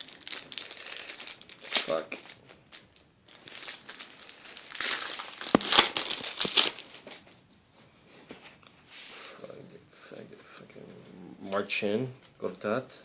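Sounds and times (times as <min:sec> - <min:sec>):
wrapper crinkling and crackling: 0:00.0 - 0:07.4.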